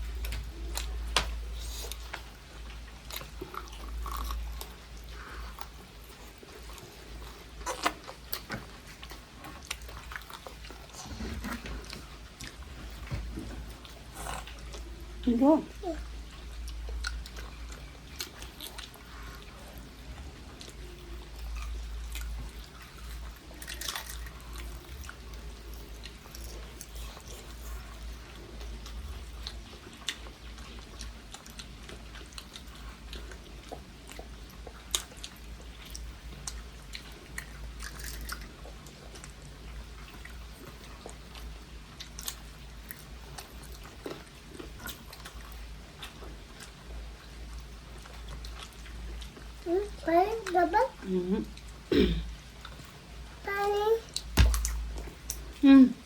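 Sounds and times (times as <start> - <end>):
person chewing crunchy food: 0.0 - 14.9, 16.3 - 49.6, 54.1 - 55.6.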